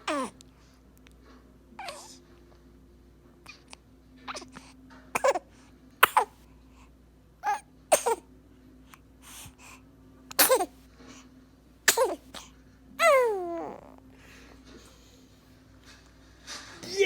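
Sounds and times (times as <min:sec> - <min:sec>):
baby sneezing: 0:06.0 - 0:06.4, 0:07.5 - 0:08.2, 0:10.3 - 0:10.7, 0:11.9 - 0:13.4.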